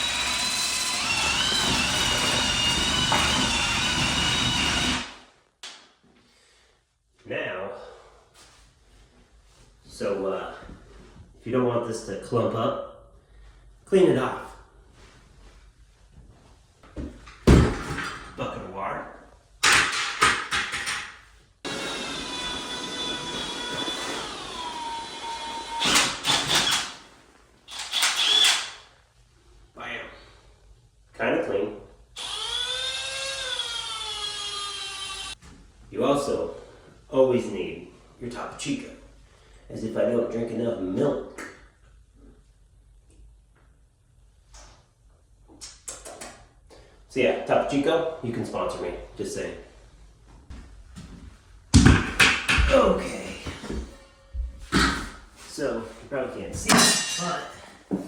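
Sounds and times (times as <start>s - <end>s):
power drill motor whine: 0.0s - 5.2s, 21.7s - 27.0s, 27.7s - 28.8s, 32.2s - 35.4s
motor whining: 32.2s - 35.4s.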